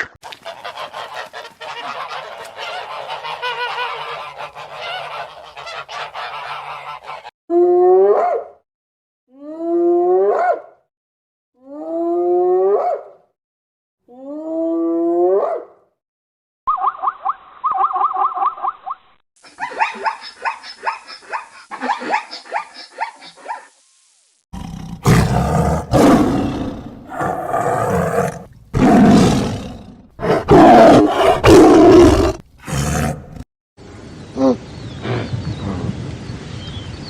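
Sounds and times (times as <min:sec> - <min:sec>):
big cat roaring: 0:24.6 - 0:33.4.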